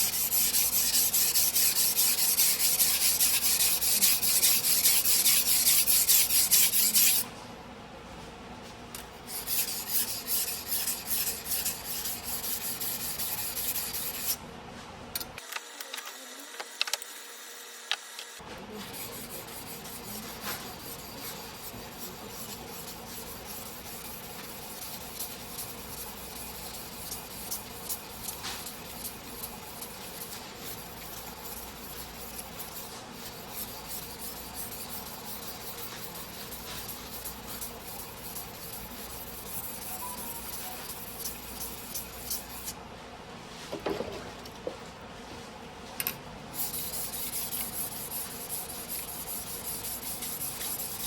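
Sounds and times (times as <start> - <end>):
blade scraping on whetstone: 0.0 - 7.2, 9.3 - 14.4, 18.8 - 42.8, 46.6 - 51.0.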